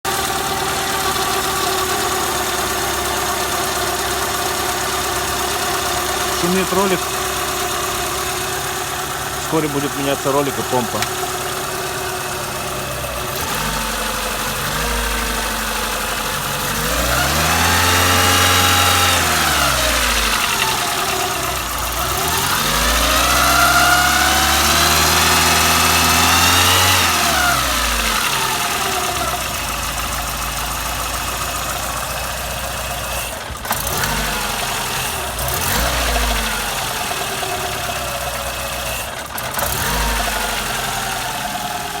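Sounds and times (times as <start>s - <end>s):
car engine revving: 6.1s - 30.1s.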